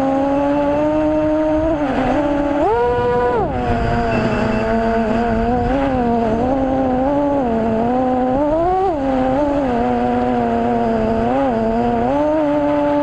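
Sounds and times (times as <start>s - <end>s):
drone motors whining: 0.0s - 13.0s
low rumble: 1.6s - 8.5s.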